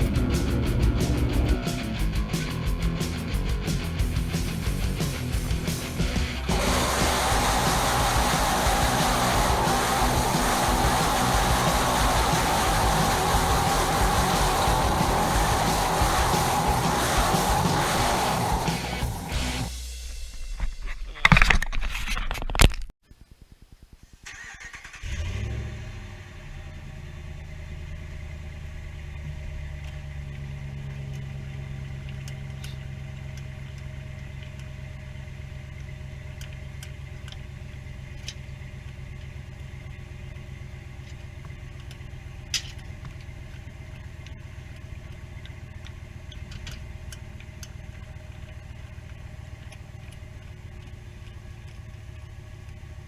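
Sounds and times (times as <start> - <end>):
utility vehicle engine idling: 0.0 - 19.7, 25.9 - 53.0.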